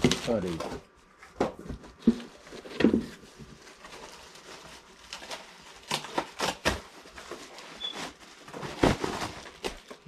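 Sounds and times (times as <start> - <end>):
cardboard rustling: 0.0 - 10.0.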